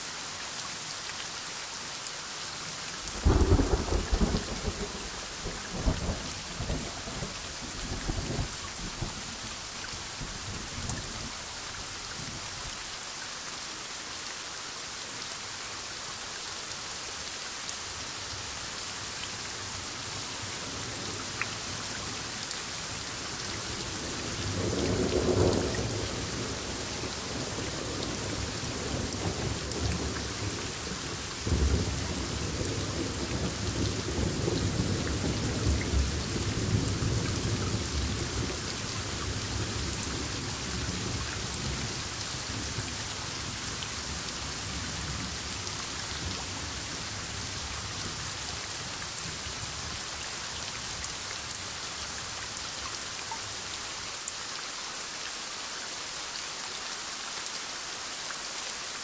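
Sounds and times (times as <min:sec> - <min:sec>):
heavy rain: 0:00.0 - 0:59.0
rolling thunder: 0:03.2 - 0:07.4.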